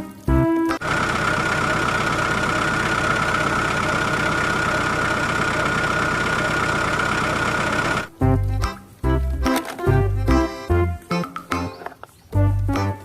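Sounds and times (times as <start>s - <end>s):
high motor whine: 0.8s - 8.1s.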